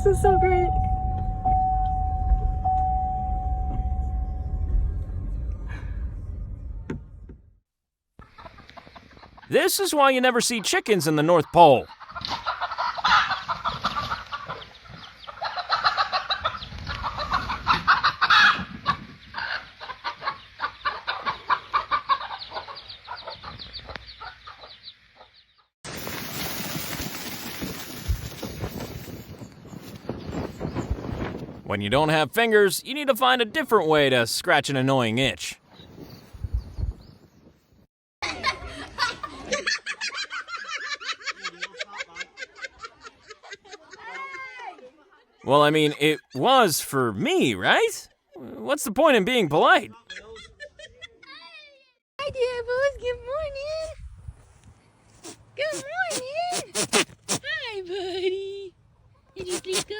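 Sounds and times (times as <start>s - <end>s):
chickens clucking and squawking: 8.2s - 9.5s, 11.8s - 25.4s
wind on microphone: 28.1s - 31.7s, 35.8s - 37.8s, 52.2s - 54.6s.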